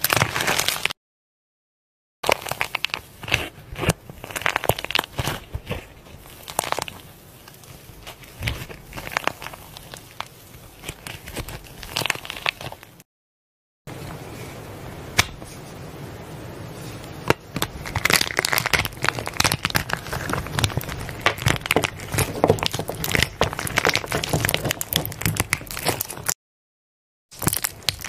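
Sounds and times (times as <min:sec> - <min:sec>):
slime crackling and popping: 0:00.0 - 0:01.0, 0:02.2 - 0:13.0, 0:17.2 - 0:26.4, 0:27.3 - 0:28.0.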